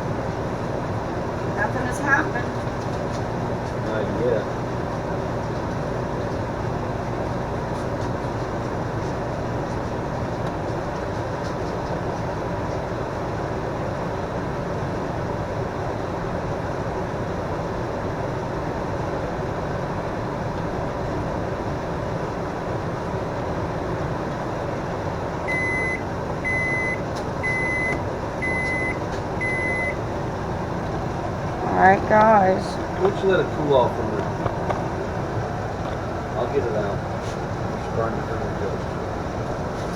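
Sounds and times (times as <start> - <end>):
microwave oven humming: 0.0 - 39.9
short high beeps: 25.5 - 30.0.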